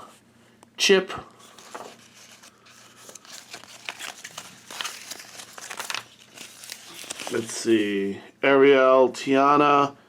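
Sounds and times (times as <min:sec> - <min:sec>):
paper packaging crinkling: 0:01.4 - 0:08.1.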